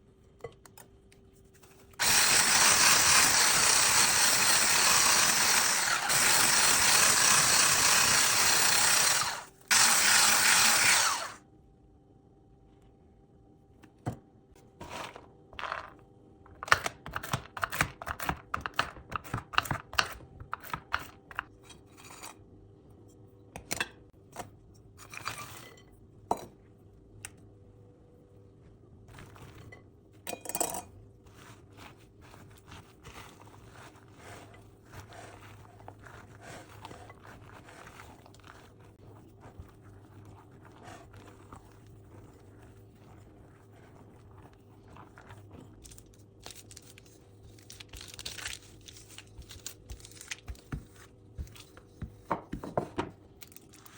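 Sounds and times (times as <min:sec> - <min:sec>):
electric kitchen appliance running: 0:02.0 - 0:11.4.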